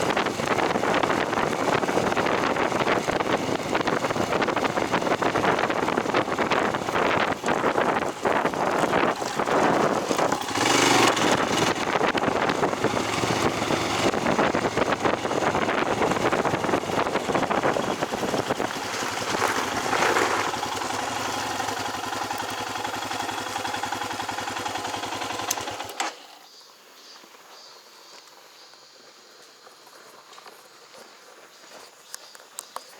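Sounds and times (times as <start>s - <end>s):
wind noise on microphone: 0.0s - 22.8s
motorcycle engine running: 0.0s - 26.5s.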